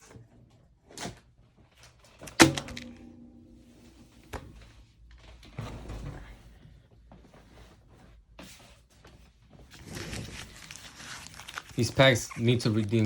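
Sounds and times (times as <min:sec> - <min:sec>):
loud ringing thunk: 0:02.4 - 0:04.6
rustling of things handled: 0:03.8 - 0:13.0.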